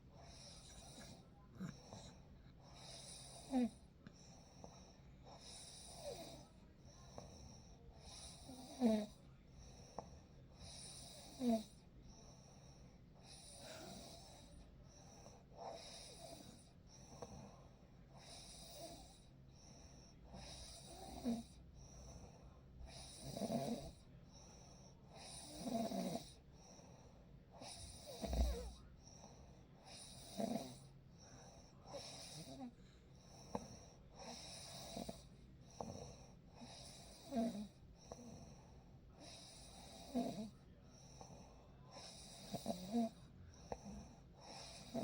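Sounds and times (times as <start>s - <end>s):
soft breathing: 0.0s - 23.1s, 23.8s - 45.0s
person snoring: 27.6s - 28.8s.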